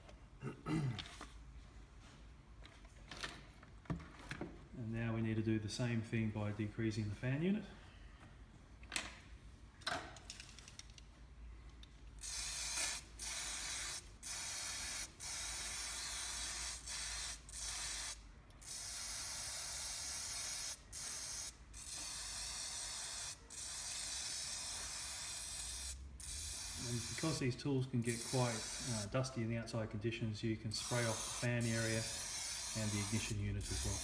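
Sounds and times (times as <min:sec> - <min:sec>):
aerosol can spraying: 0:12.2 - 0:29.2, 0:30.8 - 0:34.0.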